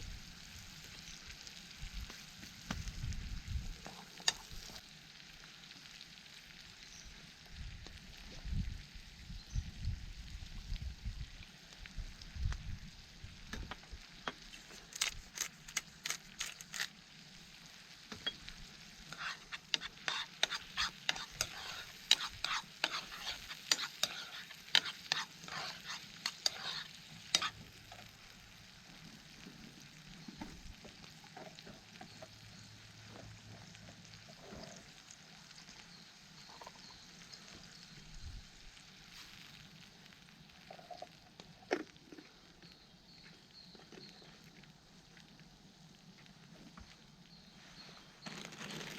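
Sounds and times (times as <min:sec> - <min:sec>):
food frying in a pan: 0:00.0 - 0:48.9
utensil scraping in a pan: 0:18.1 - 0:28.1.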